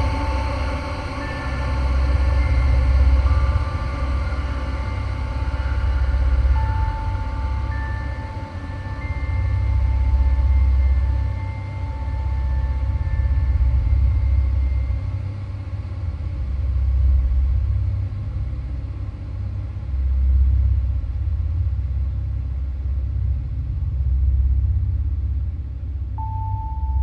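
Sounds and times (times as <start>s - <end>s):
faint high ringing tones: 0.0s - 16.8s, 26.2s - 27.0s
deep low rumbling drone: 0.0s - 27.0s.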